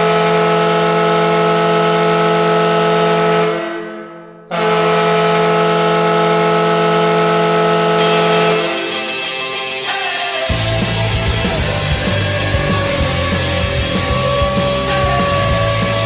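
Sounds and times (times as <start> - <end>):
arena goal horn blasts: 0.0 - 9.0, 12.6 - 16.0.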